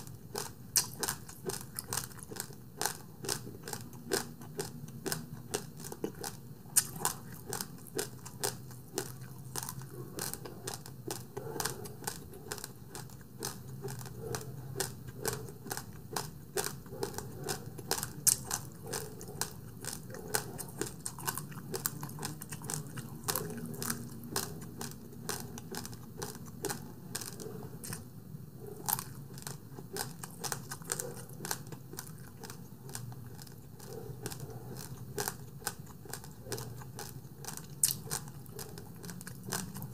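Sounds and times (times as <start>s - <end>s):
mouth chewing and clicking: 0.0s - 39.9s.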